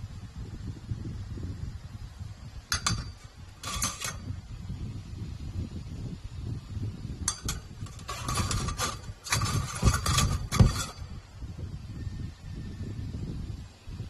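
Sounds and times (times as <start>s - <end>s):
metallic clinks: 2.7s - 4.4s, 7.3s - 11.2s
heavy thumps: 7.3s - 11.1s.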